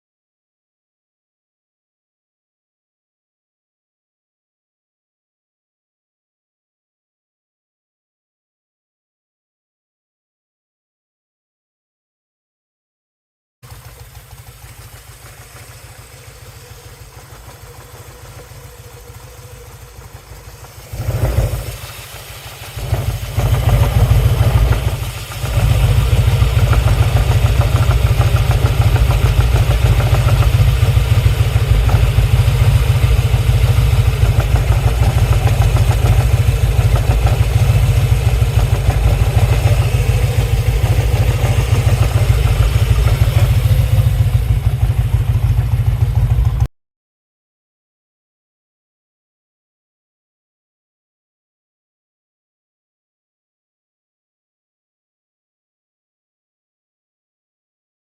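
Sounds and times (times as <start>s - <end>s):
motorcycle engine idling rumble: 13.6s - 46.7s
motorcycle engine starting: 13.6s - 46.7s.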